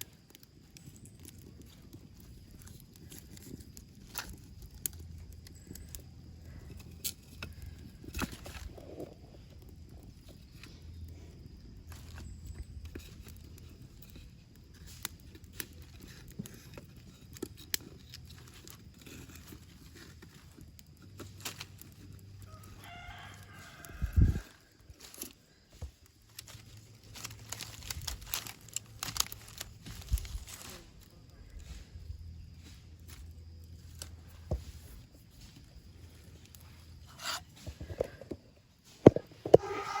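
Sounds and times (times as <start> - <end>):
rooster crowing: 22.4 - 24.7, 39.6 - 40.0.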